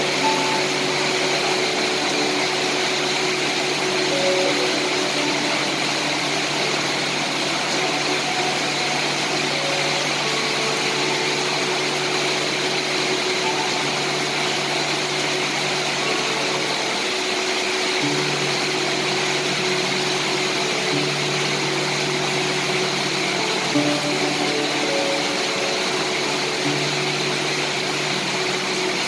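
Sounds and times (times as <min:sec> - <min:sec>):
steady rain: 0:00.0 - 0:29.0.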